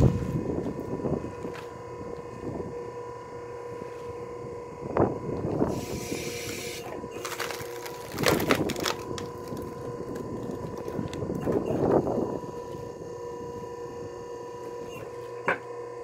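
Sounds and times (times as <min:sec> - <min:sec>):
log splitter humming: 0:00.0 - 0:16.0
wood cracking and crunching: 0:07.0 - 0:12.0.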